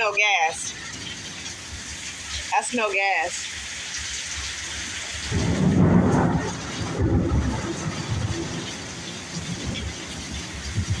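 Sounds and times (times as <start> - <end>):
heavy rain hissing: 0.0 - 11.0
low thunder rumble: 5.2 - 11.0.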